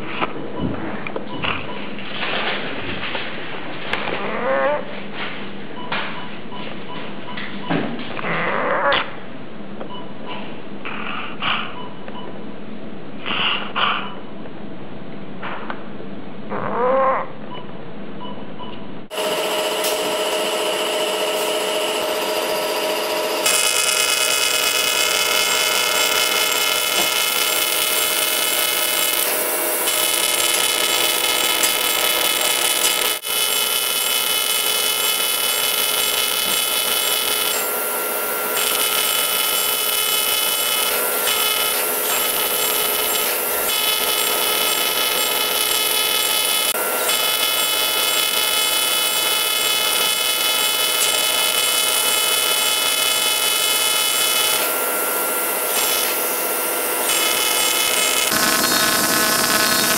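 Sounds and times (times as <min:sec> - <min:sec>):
machine hiss: 0:19.1 - 0:59.9
surgical machine whine: 0:19.1 - 0:59.9.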